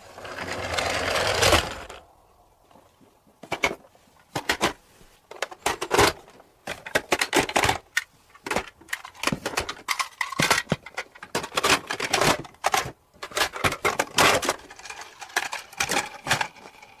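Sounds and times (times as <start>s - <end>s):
plastic toys clattering: 0.3s - 2.0s, 3.4s - 17.0s.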